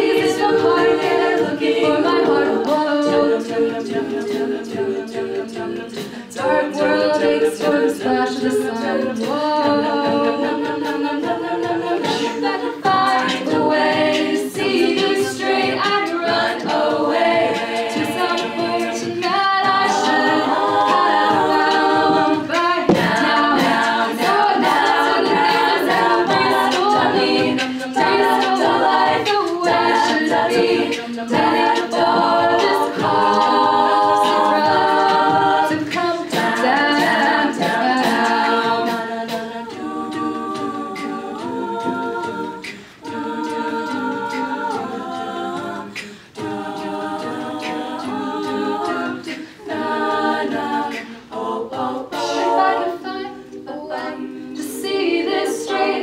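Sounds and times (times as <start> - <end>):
women singing in harmony: 0.0 - 56.0
sharp percussive hits: 20.1 - 29.8.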